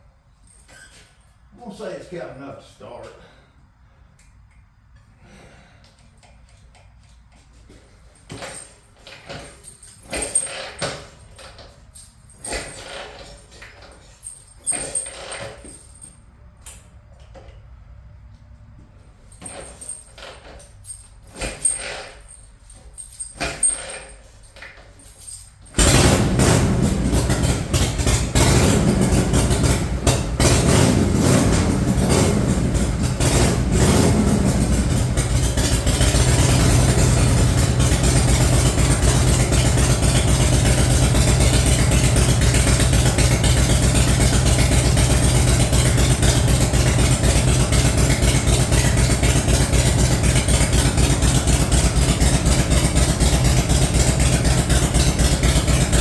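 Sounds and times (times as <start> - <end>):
person talking: 1.5 - 3.3
motorcycle engine idling: 25.8 - 56.0.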